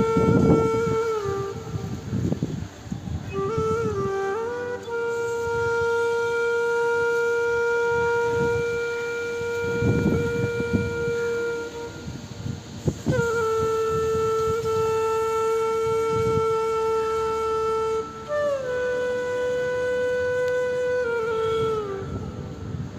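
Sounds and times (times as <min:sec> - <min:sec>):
horn-like blown tone: 0:00.0 - 0:22.9.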